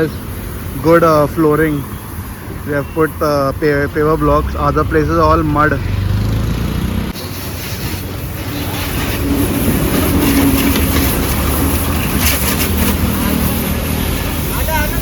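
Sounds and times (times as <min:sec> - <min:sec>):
pressure washer motor hum: 0:07.2 - 0:15.0
spraying water hiss: 0:07.2 - 0:15.0.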